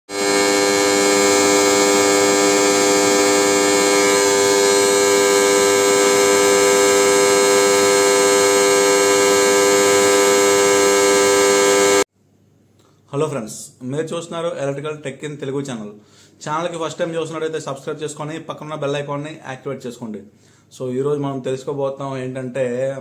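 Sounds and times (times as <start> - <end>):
electrical contactor humming: 0.1 - 12.1.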